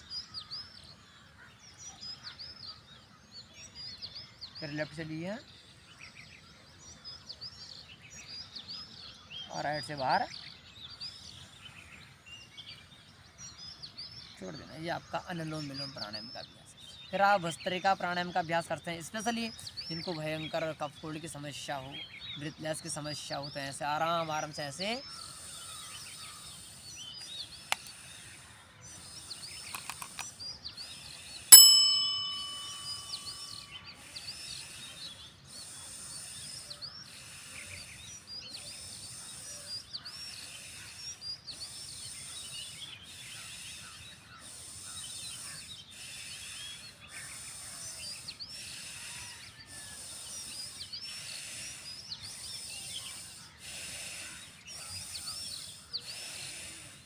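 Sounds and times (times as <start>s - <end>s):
birds chirping: 0.0s - 57.0s
bell-like ding: 31.5s - 33.7s
forceful breathing through nose: 34.2s - 57.0s.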